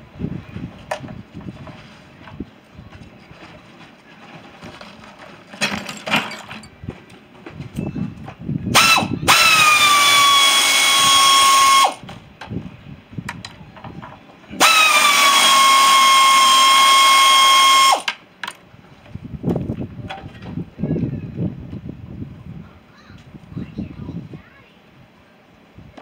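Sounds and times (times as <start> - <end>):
handling knocks and clatter: 0.8 - 8.4
cordless power drill whining: 8.8 - 12.0, 14.6 - 18.2.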